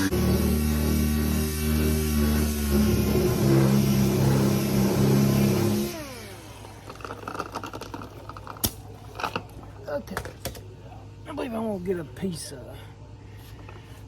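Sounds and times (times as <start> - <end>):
power sander running: 0.0 - 7.1.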